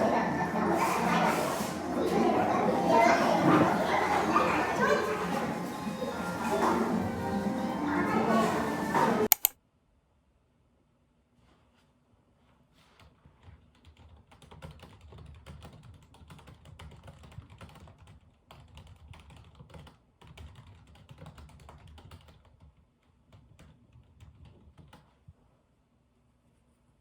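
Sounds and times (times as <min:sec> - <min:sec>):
typing on keyboard: 0:09.3 - 0:09.5, 0:13.4 - 0:25.2.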